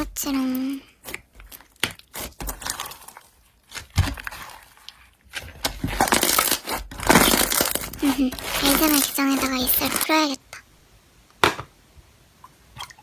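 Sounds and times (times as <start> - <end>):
slime squishing and popping: 1.0 - 10.0.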